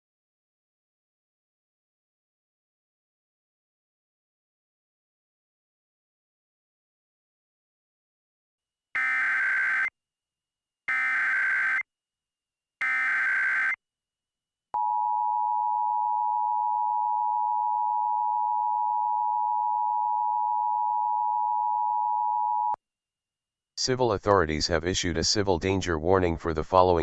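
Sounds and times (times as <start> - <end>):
screeching digital data tones: 9.0 - 9.9, 10.9 - 11.8, 12.8 - 13.8.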